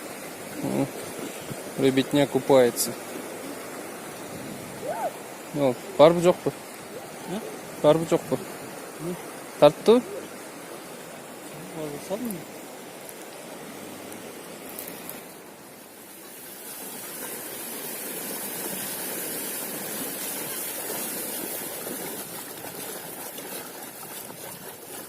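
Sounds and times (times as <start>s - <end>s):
river water rushing: 0.0s - 25.0s.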